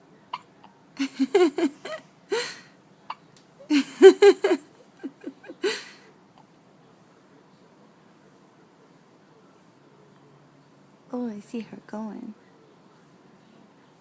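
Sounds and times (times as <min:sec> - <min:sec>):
baby hiccuping: 0:00.3 - 0:00.8
baby laughing: 0:03.7 - 0:05.8.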